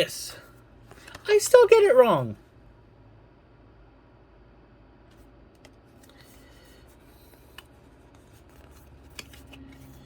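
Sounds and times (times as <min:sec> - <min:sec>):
cards rustling: 0:05.2 - 0:10.0.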